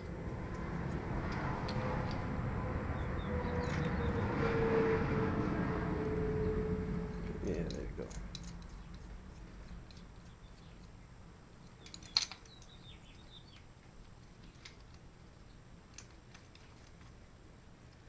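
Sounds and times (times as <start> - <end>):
small clicks of metal tools: 7.6 - 11.0, 11.6 - 12.8, 15.9 - 17.1.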